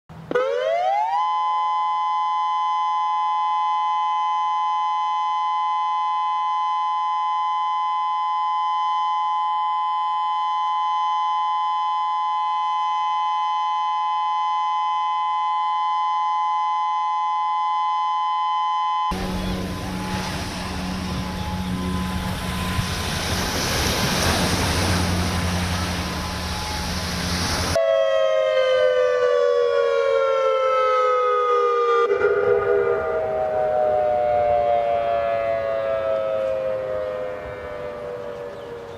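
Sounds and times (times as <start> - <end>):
warning siren two-note tone: 0.3 - 38.9
outdoor rumble: 19.1 - 27.8
wind noise: 19.1 - 27.8.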